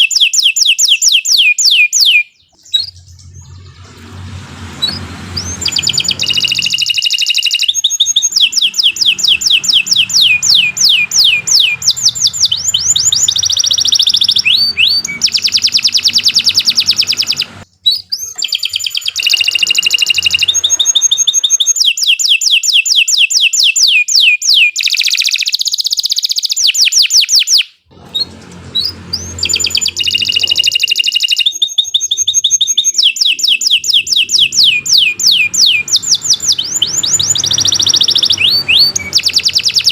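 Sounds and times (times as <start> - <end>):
canary singing: 0.0 - 39.9.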